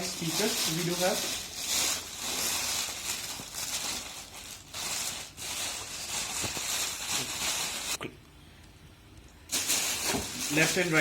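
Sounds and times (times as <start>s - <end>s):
packaging rustling: 0.0s - 8.0s, 9.5s - 11.0s.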